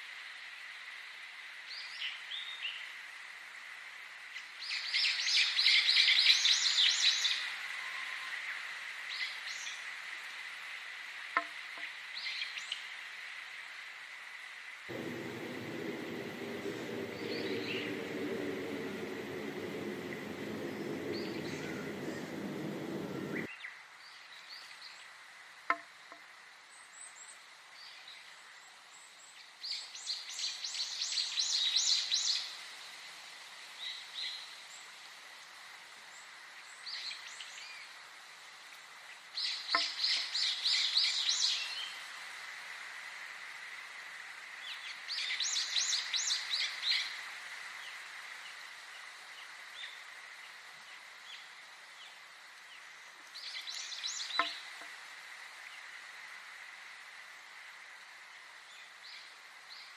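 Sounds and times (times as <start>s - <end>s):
low-pitched sound: 14.9s - 23.5s
songbird singing: 14.9s - 23.5s, 53.4s - 54.8s.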